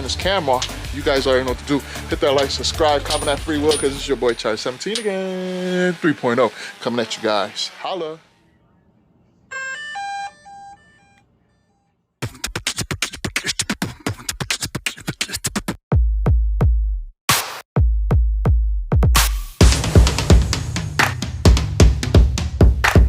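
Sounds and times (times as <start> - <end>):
deep bass-drum kicks: 15.9 - 17.1, 17.8 - 23.0.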